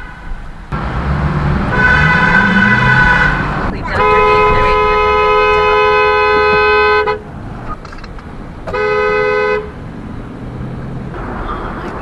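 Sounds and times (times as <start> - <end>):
two-note car horn blast: 1.7 - 3.4.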